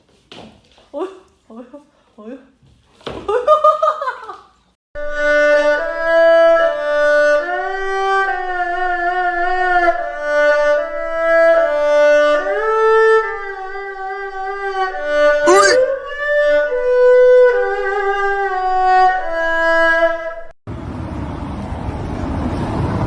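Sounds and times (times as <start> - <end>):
short loud pitch-bending sound: 15.5 - 15.9.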